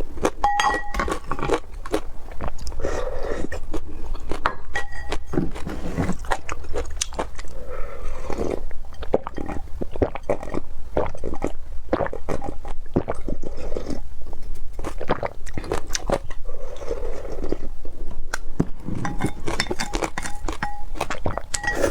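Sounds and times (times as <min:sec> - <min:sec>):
person chewing and biting: 0:00.0 - 0:07.6, 0:18.3 - 0:21.9
mouth smacks and crunches: 0:03.4 - 0:07.6, 0:08.5 - 0:16.4, 0:19.4 - 0:21.9.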